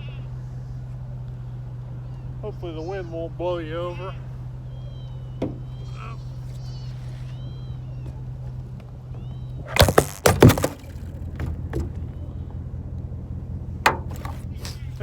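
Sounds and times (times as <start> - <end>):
camera falling and clattering: 9.7 - 12.0.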